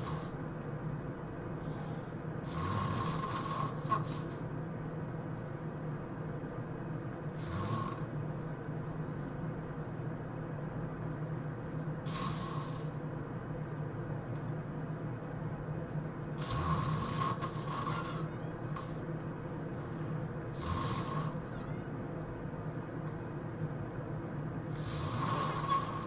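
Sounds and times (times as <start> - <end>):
person snoring: 0.0 - 0.4, 1.7 - 4.3, 7.4 - 8.1, 12.1 - 13.0, 16.4 - 19.0, 20.5 - 21.5, 24.8 - 26.0
steady background hum: 0.0 - 26.0.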